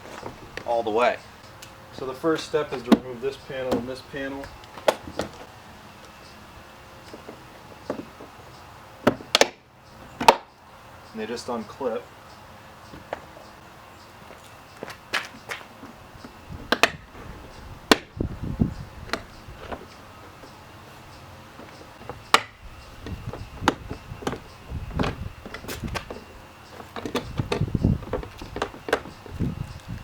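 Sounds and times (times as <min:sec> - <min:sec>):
door panel thumping and rattling: 0:22.0 - 0:29.6.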